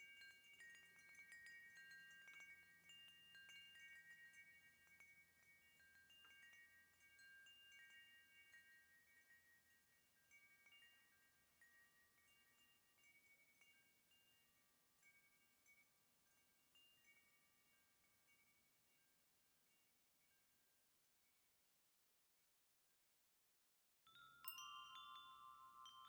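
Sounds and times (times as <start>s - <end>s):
wind chime ringing: 24.1s - 26.0s.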